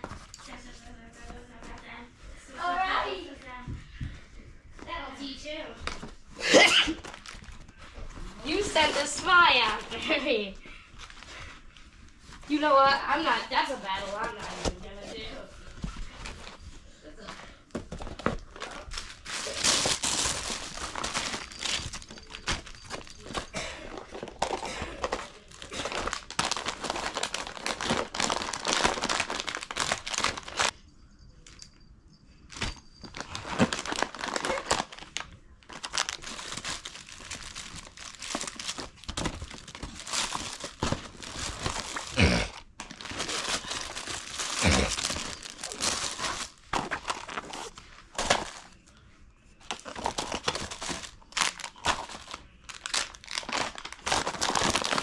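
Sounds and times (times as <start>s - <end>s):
packaging crinkling and rustling: 5.8s - 10.2s, 17.7s - 30.8s, 32.5s - 49.0s, 49.6s - 55.0s.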